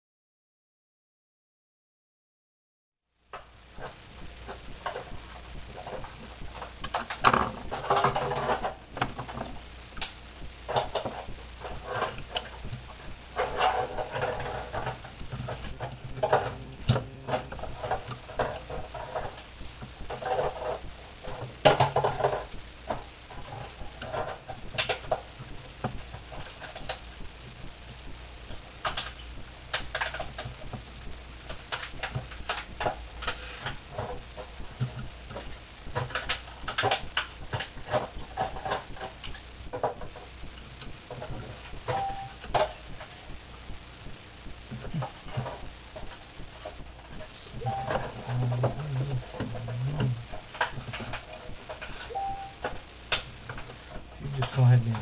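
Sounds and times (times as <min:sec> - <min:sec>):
steady low hum: 0:03.2 - 0:55.0
small parts clicking and knocking: 0:03.4 - 0:43.1.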